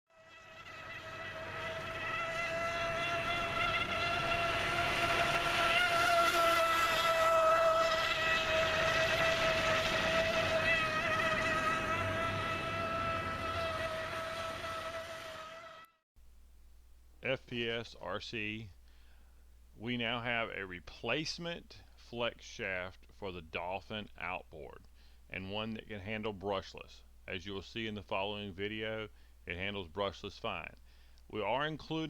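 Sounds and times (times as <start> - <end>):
model boat electric motor whine: 0.1 - 16.0
water noise: 0.2 - 15.8.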